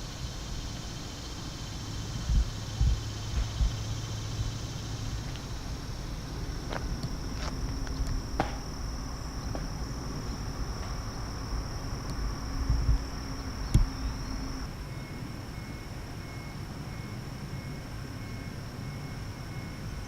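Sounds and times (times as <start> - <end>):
low rumble: 0.0 - 14.9
high-pitched insect buzz: 0.0 - 16.5
sharp clicks: 13.7 - 14.0.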